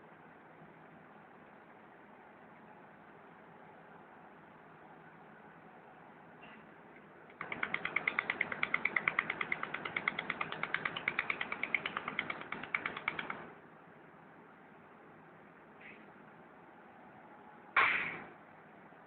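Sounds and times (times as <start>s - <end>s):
laser welder clicking pulses: 7.4s - 13.4s.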